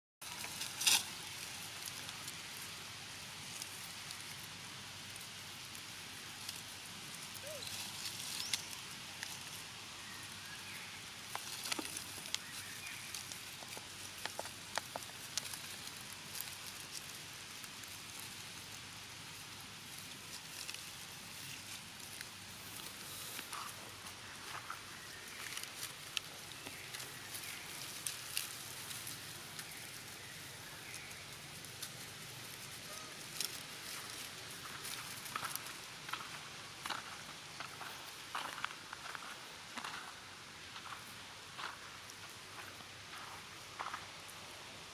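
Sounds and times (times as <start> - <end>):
light crackles and clicks: 0.2 - 9.7, 11.2 - 30.2, 30.9 - 36.2
outdoor ambience hiss: 0.2 - 44.9.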